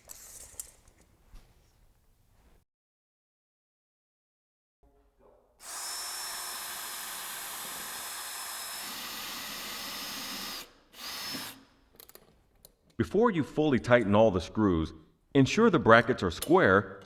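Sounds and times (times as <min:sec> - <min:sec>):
power drill whining: 0:05.6 - 0:11.7.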